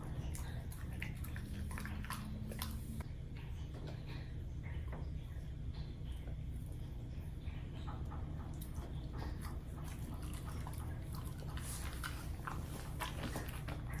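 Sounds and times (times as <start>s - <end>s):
dog chewing crunchily: 0.0s - 2.9s, 8.6s - 14.0s.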